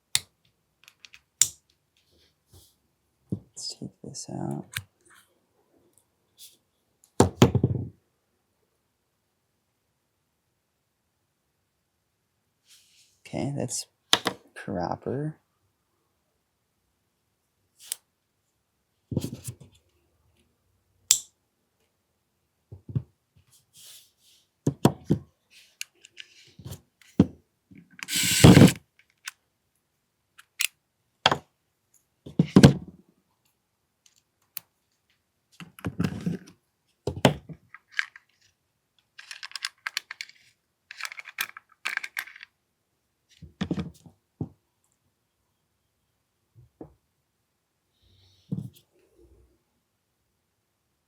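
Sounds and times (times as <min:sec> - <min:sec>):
small metal parts clicking: 0:28.0 - 0:29.4, 0:39.2 - 0:42.5.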